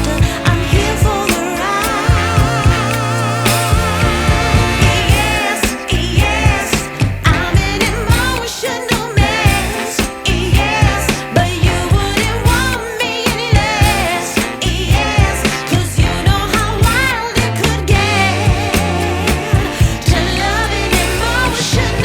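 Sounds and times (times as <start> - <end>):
song with singer over beat: 0.0 - 22.0.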